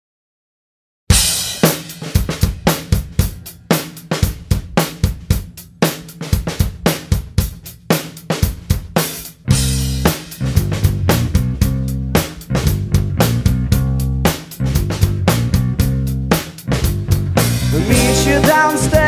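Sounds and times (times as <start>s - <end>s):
rock drum beat: 1.1s - 19.0s
bass and guitar: 9.4s - 19.0s.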